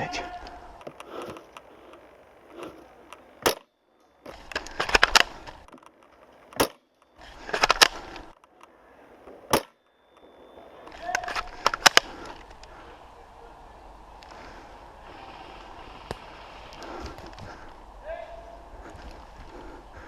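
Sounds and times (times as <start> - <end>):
airsoft rifle shots: 3.4 - 3.7, 6.5 - 6.9, 9.5 - 9.8.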